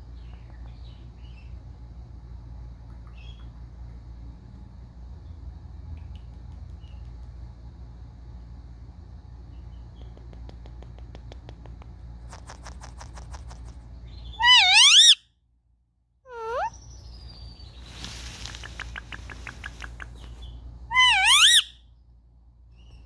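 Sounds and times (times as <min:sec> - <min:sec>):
parrot clicking: 0:10.0 - 0:13.8, 0:18.4 - 0:20.4
parrot calling: 0:14.3 - 0:15.2, 0:16.3 - 0:16.8, 0:20.9 - 0:21.8.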